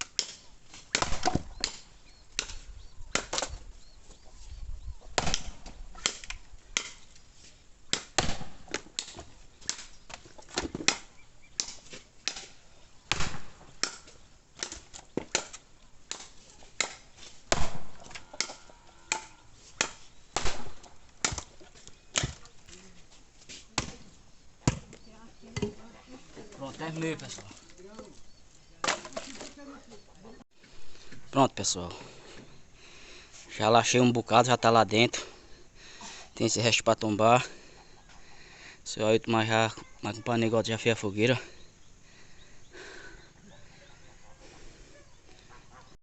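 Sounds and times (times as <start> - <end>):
blade chopping into wood: 0.0 - 1.8, 2.4 - 3.6, 5.2 - 7.0, 7.9 - 9.9, 10.5 - 21.5, 22.1 - 22.5, 24.6 - 25.0.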